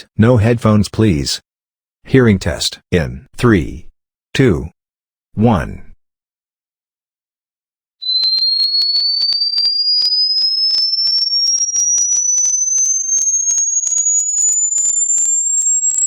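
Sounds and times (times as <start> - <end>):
rising high sine tone: 8.0 - 16.0.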